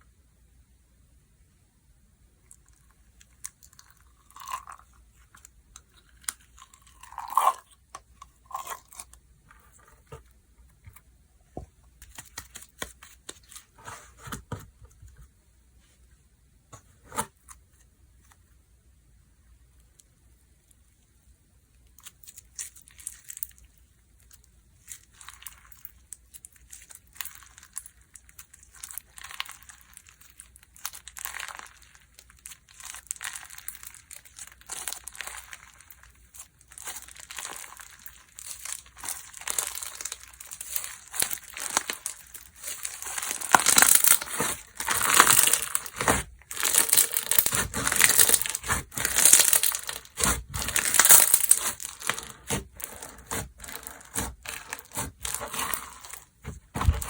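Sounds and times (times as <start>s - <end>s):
hands squeezing crackling slime: 21.8s - 57.0s.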